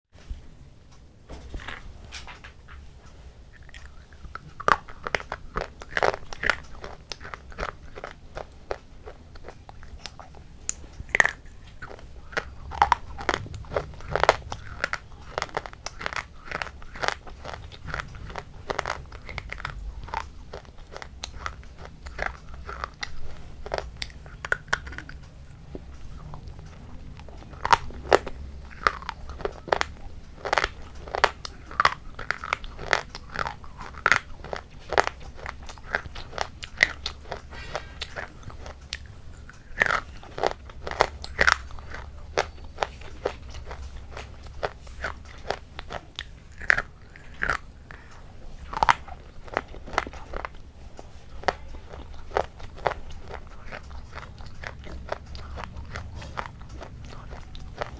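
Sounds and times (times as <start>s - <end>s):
low steady hum: 0.2s - 57.9s
crunching and chewing food: 1.4s - 57.9s.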